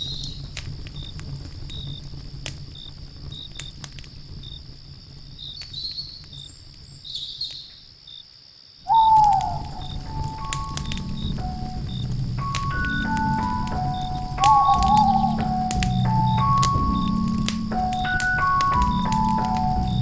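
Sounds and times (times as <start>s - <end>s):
wood fire crackling and popping: 0.0s - 7.8s, 8.9s - 20.0s
crickets chirping: 0.0s - 20.0s
sliding tone with held notes: 8.9s - 20.0s.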